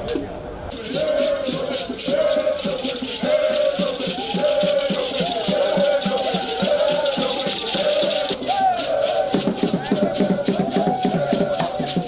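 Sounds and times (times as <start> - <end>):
voices singing a repeated phrase: 0.0 - 12.0
low drum strokes: 0.1 - 8.5
rattles shaking a steady beat: 0.7 - 12.0.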